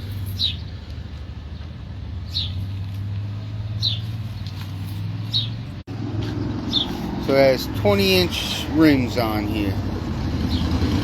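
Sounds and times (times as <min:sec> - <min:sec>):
small bird chirping: 0:00.1 - 0:02.8, 0:03.7 - 0:05.8.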